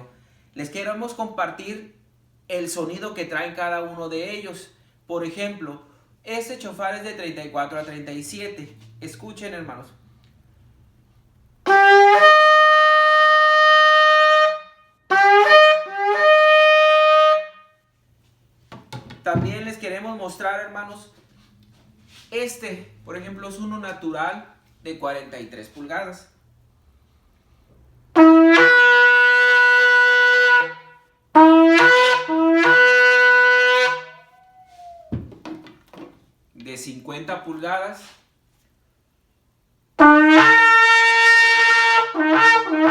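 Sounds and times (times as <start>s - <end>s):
shofar blasts: 11.6s - 17.9s, 28.1s - 35.2s, 40.0s - 42.9s.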